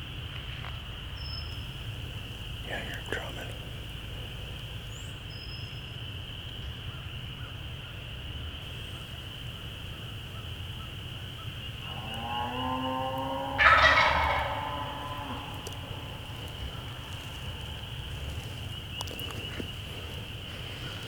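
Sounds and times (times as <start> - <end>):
turkey gobbling: 9.0 - 21.0.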